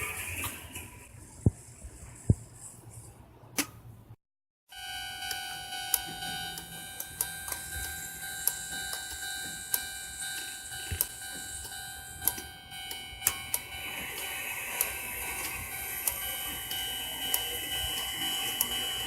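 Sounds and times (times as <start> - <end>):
electronic warning tone: 4.7 - 19.0
sharp clicks and ticks: 5.3 - 19.0.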